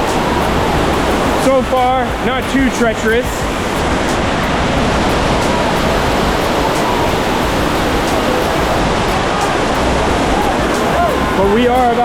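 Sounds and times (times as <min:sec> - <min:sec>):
roar of falling water: 0:00.0 - 0:12.0.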